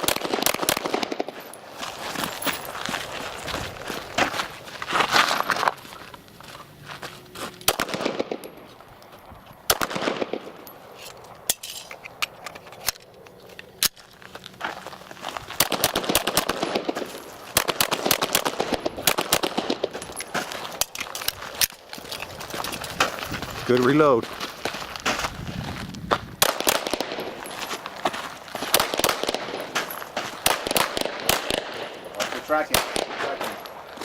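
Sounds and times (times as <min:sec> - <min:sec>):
rifle and handgun gunfire: 0:00.0 - 0:01.5, 0:07.6 - 0:08.6, 0:09.6 - 0:10.6, 0:15.6 - 0:20.0, 0:26.4 - 0:27.5, 0:28.6 - 0:33.8.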